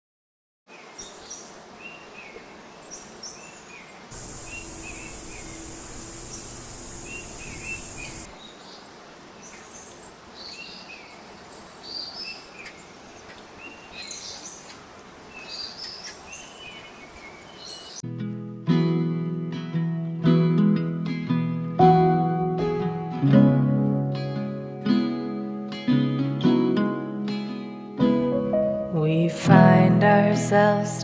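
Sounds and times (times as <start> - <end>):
steady background hiss: 0.7 - 18.0
small birds chirping: 0.8 - 8.8, 9.4 - 18.0
rushing noise with low hum: 4.1 - 8.3.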